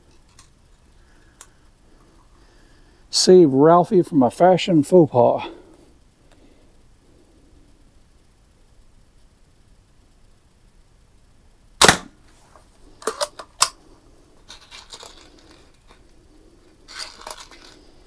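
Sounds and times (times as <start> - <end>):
bb gun shot: 11.8 - 12.2
rattling handling noise: 14.4 - 18.0.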